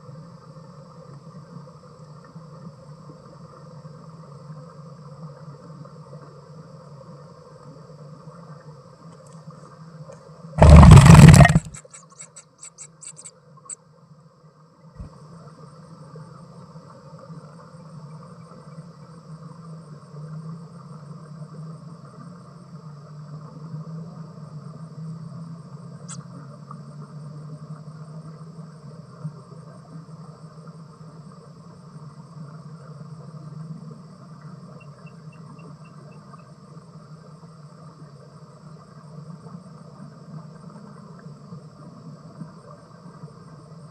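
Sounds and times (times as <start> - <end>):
loud burst of noise: 10.6 - 11.8.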